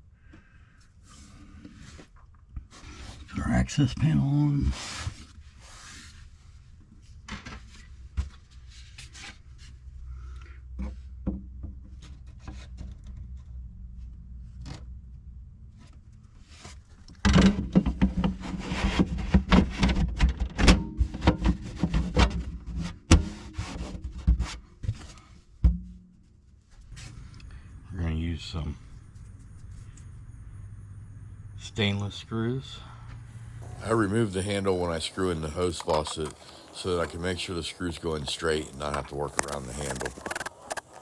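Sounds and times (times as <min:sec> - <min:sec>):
panel rubbing and scraping: 0:33.6 - 0:41.0.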